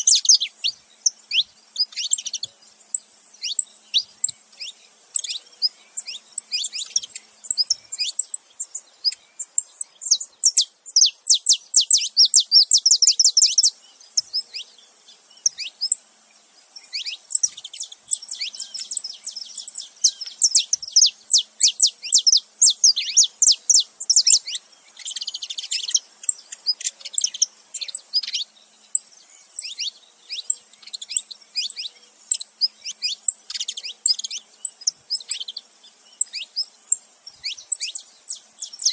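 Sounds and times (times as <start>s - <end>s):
finches chirping: 0.0s - 38.9s.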